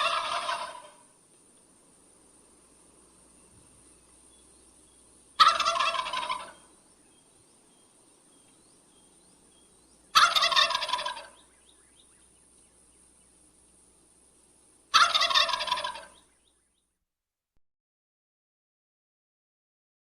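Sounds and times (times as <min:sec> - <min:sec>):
turkey gobbling: 0:00.0 - 0:01.1, 0:05.4 - 0:06.7, 0:10.1 - 0:11.5, 0:14.9 - 0:16.2.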